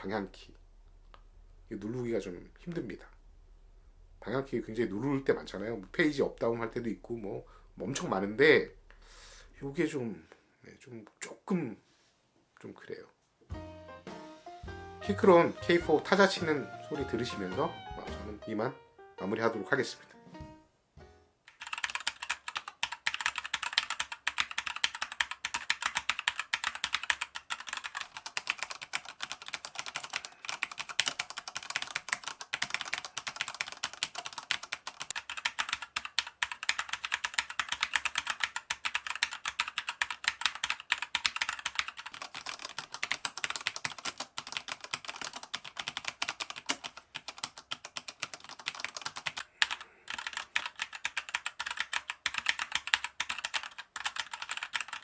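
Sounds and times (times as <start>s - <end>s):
mechanical keyboard typing: 21.5s - 55.0s.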